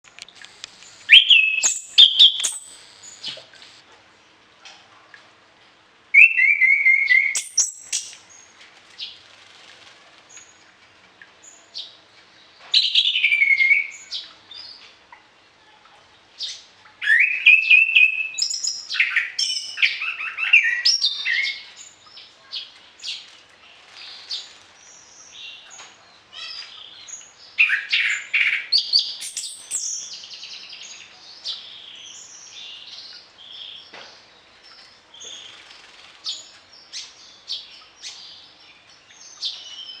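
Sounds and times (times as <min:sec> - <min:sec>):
bird chirping: 0:00.4 - 0:03.8, 0:06.2 - 0:09.2, 0:16.4 - 0:40.0
thrush singing whistled phrases: 0:01.0 - 0:03.2.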